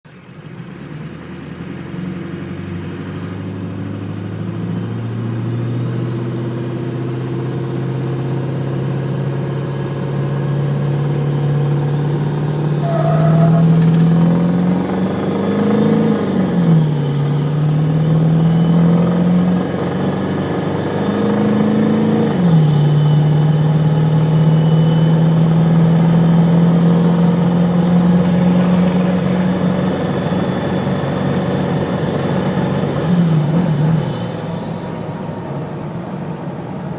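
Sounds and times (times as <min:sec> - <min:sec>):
diesel engine accelerating: 0:00.1 - 0:36.9
turbo whistle: 0:12.2 - 0:13.9.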